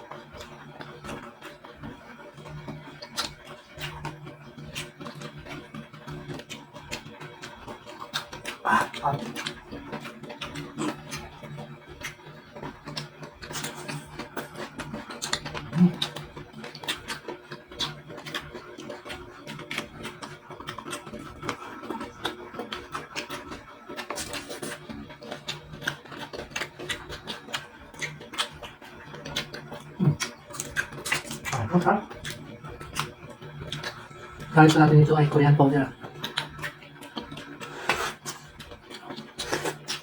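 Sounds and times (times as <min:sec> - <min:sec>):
chewing and lip-smacking: 0:00.0 - 0:40.0
steady low hum: 0:08.6 - 0:09.8, 0:29.8 - 0:40.0.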